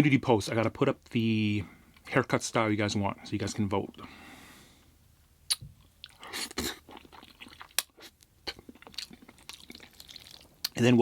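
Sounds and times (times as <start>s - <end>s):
mouth clicks and crunches: 5.5s - 10.8s
person chewing food: 5.5s - 10.8s.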